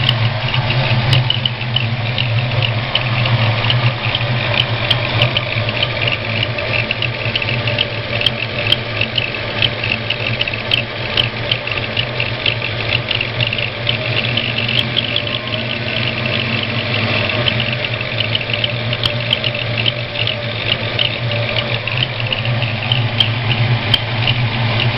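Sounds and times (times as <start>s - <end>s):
car engine idling: 0.0s - 24.9s
rhythmic high-pitched chirping squeak: 0.0s - 24.9s.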